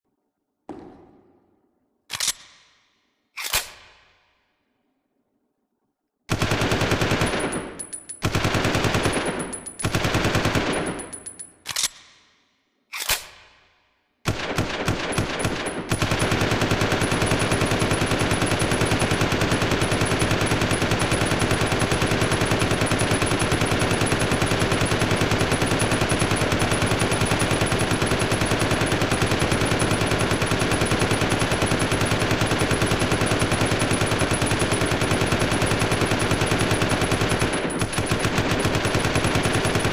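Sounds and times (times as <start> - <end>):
submachine gun firing bursts: 6.3 - 11.1, 14.3 - 39.9.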